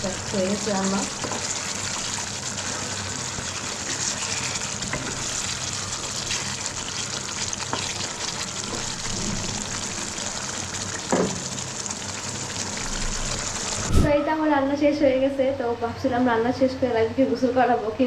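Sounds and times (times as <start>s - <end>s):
curry sizzling in a pan: 0.0s - 13.9s.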